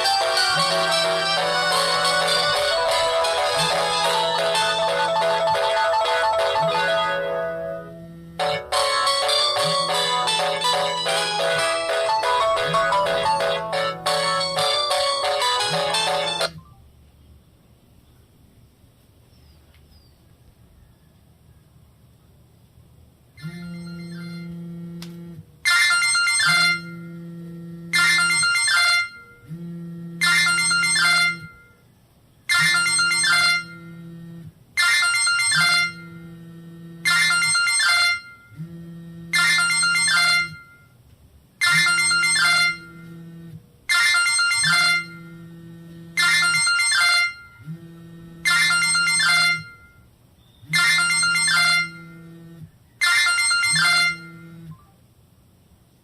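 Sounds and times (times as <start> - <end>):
electronic ringtone phrase: 0.0 - 16.5, 30.2 - 31.6, 32.5 - 33.8, 37.1 - 38.4, 39.4 - 40.8, 41.6 - 43.0, 43.9 - 45.2, 46.2 - 47.6, 48.5 - 49.9, 50.8 - 52.1, 53.0 - 54.4.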